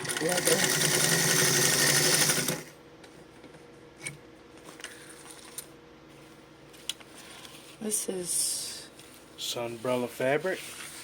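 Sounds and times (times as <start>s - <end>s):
sewing machine stitching leather: 0.0s - 2.7s.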